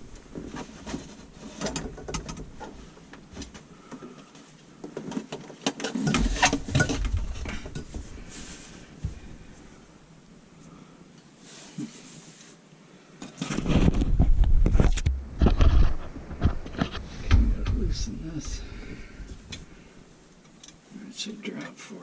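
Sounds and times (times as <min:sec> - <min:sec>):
tools and plumbing parts clattering: 0:00.6 - 0:02.7, 0:05.0 - 0:08.1.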